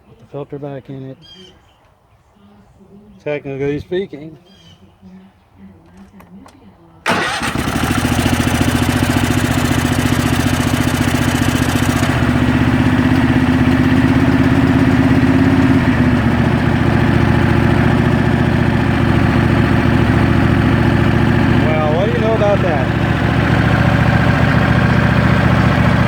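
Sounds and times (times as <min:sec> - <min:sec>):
riding mower engine running: 0:07.0 - 0:26.0.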